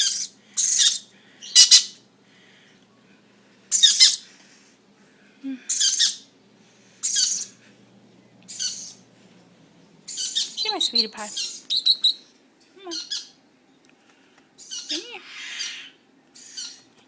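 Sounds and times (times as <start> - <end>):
parrot harsh screeches: 0.0 - 2.0, 5.7 - 6.3, 7.0 - 7.6, 8.5 - 9.0, 14.6 - 16.8.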